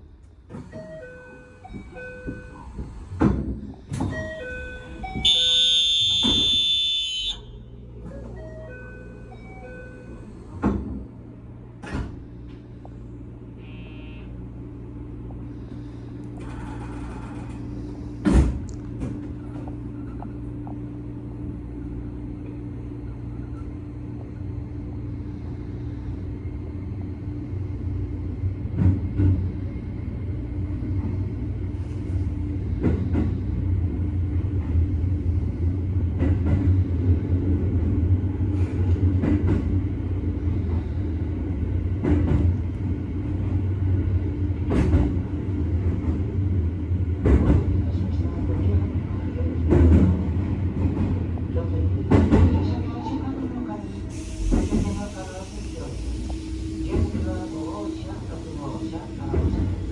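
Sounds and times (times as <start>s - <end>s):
door chime notes: 4.3s - 6.8s
loud door buzzer: 5.3s - 7.3s
train motors humming: 7.6s - 59.9s.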